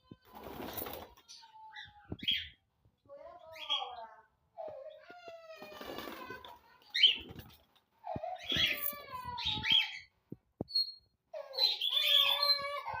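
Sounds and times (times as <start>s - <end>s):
wavering meow-like cries: 4.7s - 6.5s, 11.4s - 13.0s.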